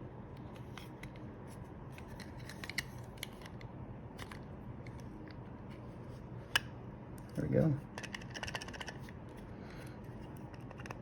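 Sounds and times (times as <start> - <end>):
low steady hum: 0.0 - 11.0.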